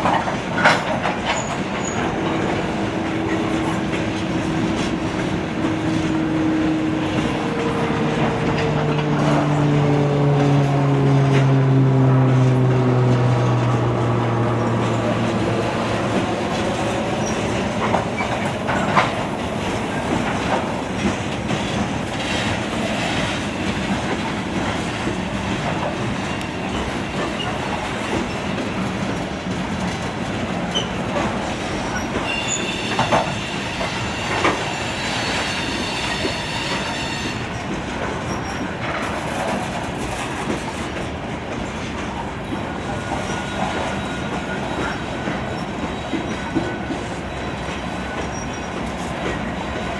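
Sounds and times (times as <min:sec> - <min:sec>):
train wheels rumbling on rail: 0:00.0 - 0:49.9
high wheel squeal: 0:14.9 - 0:20.2, 0:31.6 - 0:38.8, 0:42.8 - 0:49.9.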